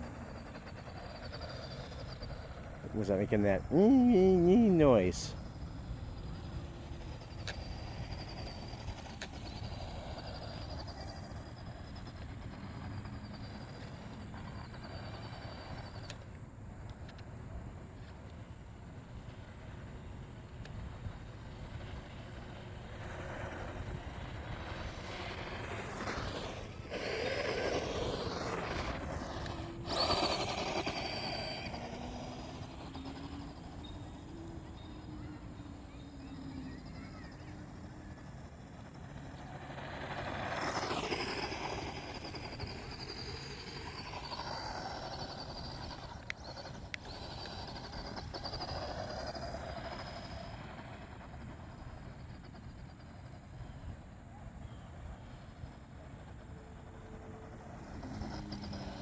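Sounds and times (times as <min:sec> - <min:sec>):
motor running: 0:00.0 - 0:17.1, 0:20.4 - 0:53.9, 0:54.6 - 0:59.0.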